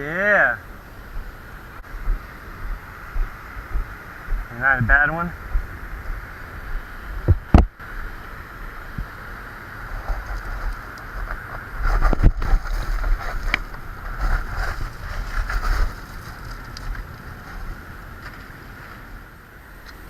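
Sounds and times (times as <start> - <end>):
steady high-pitched hum: 0.0 - 20.0
wind buffeting microphone: 0.6 - 19.3.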